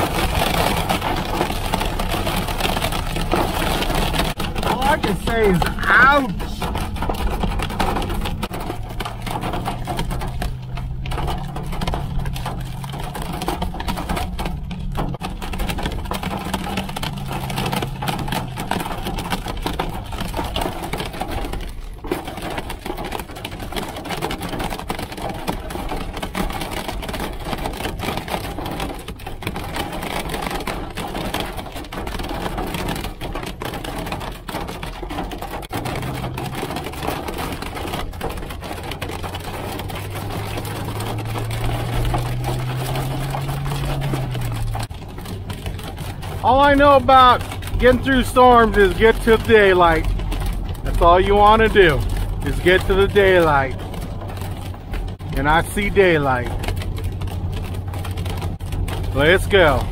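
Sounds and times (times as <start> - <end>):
hail rattling on car roof: 0.0 - 59.9.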